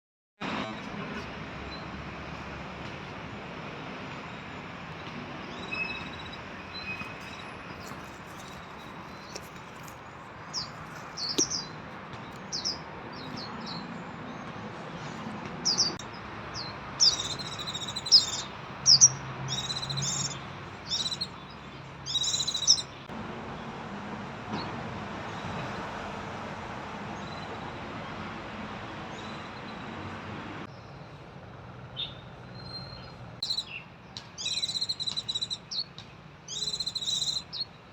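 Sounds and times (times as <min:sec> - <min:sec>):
birds chirping: 0:04.1 - 0:23.1, 0:32.0 - 0:37.8.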